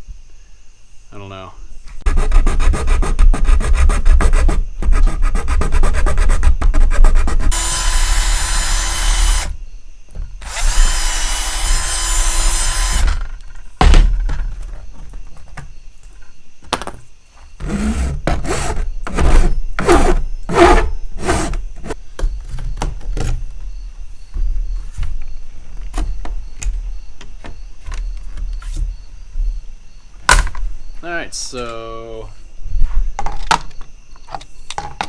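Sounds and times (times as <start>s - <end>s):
power drill boring holes: 7.5s - 9.5s, 10.4s - 13.3s.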